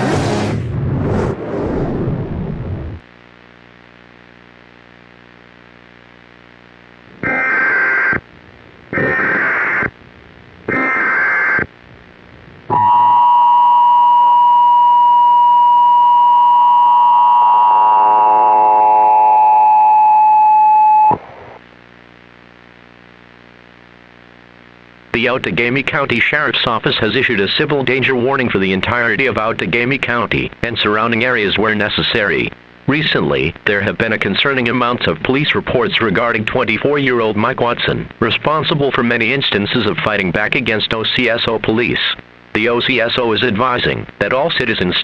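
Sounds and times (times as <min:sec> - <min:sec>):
faint steady hum: 0:01.6 - 0:45.0
long steady attention tone: 0:12.7 - 0:21.4.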